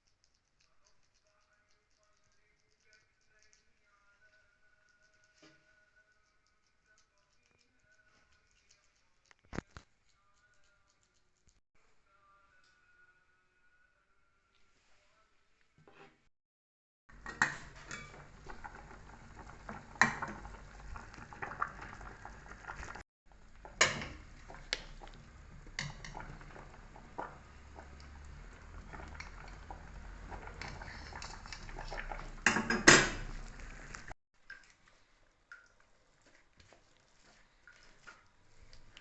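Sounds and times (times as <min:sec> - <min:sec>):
utensils clinking on pots and dishes: 0:17.1 - 0:18.8, 0:23.6 - 0:24.3, 0:30.3 - 0:33.3.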